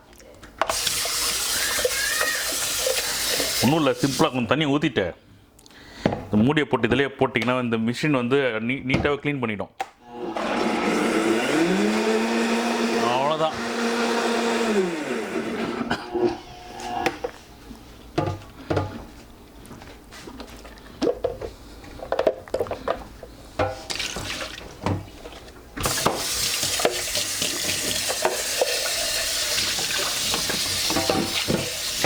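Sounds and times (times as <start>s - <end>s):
kitchen tap running: 0.6s - 4.4s, 23.7s - 24.9s, 25.8s - 32.0s.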